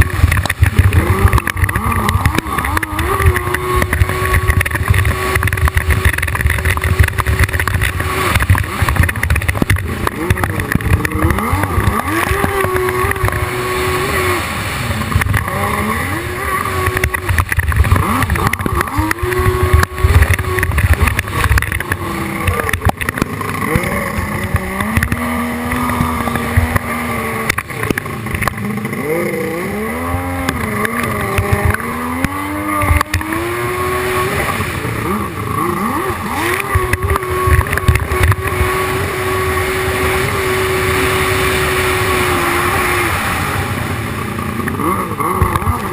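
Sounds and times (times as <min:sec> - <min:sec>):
jet ski engine revving: 0:00.0 - 0:45.9
water slapping on hull: 0:00.0 - 0:45.9.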